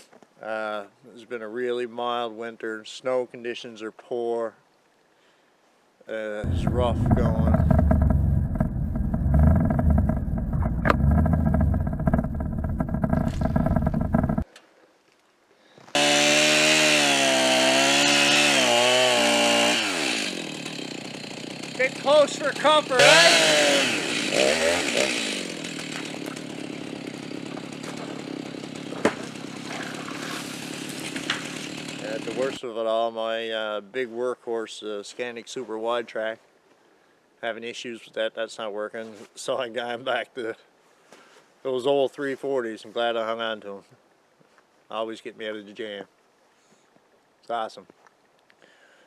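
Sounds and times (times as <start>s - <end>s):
chainsaw engine running: 6.4s - 14.4s, 16.0s - 32.6s
snowmobile engine running: 6.4s - 14.4s, 21.8s - 24.8s.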